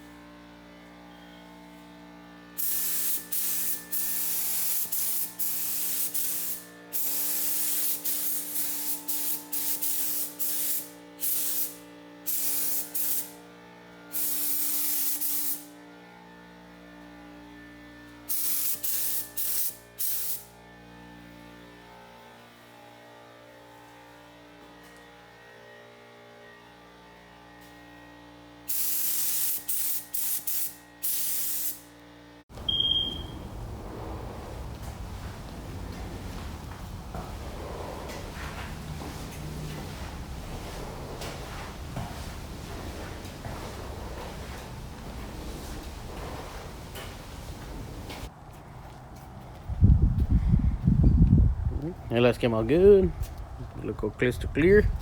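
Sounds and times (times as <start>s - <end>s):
paint spray hissing in bursts: 2.6s - 13.4s, 14.1s - 15.7s, 18.3s - 20.5s, 28.7s - 31.9s
steady low hum: 32.5s - 55.0s.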